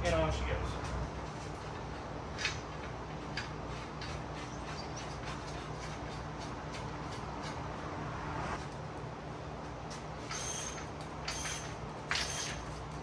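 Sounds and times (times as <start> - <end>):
steady low hum: 0.0 - 9.9.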